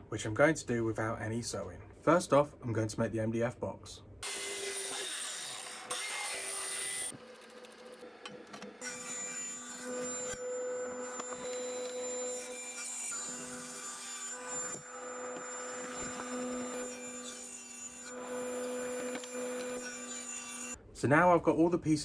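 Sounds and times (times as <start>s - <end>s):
table saw cutting board: 4.2s - 20.8s.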